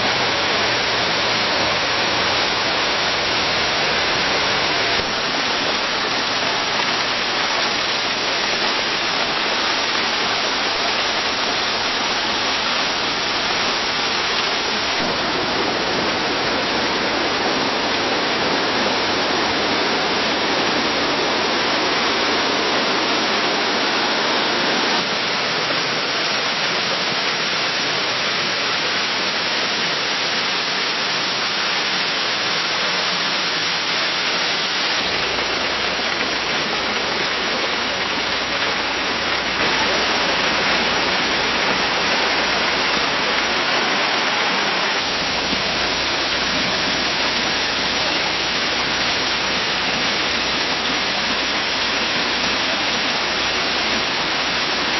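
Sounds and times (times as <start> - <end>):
heavy rain on leaves: 0.0 - 54.9.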